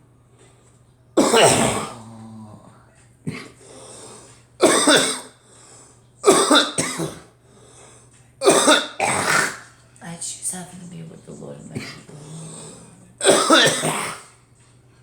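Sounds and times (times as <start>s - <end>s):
person coughing: 1.2s - 2.2s, 3.3s - 3.6s, 4.6s - 5.4s, 6.2s - 7.3s, 8.4s - 9.6s, 11.8s - 14.3s.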